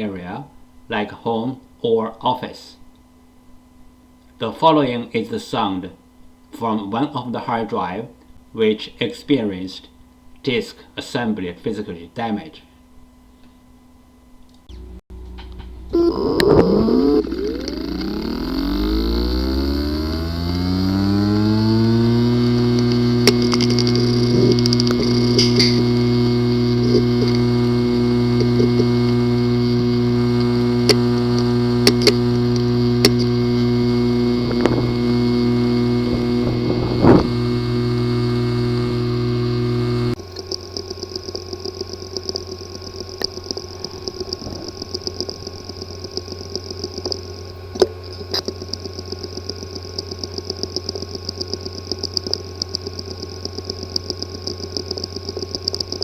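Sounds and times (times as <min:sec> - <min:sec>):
hard drive buzzing hum: 0:00.0 - 0:56.0
hard drive sharp clicks: 0:14.5 - 0:56.0
fast ticking chatter: 0:40.5 - 0:47.4, 0:48.3 - 0:56.0.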